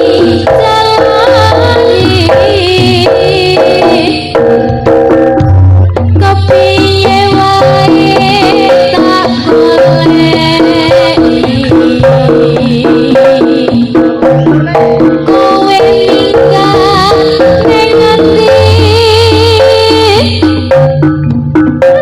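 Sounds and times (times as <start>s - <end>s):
hand drums beating: 0.0s - 22.0s
low bass line: 20.6s - 22.0s.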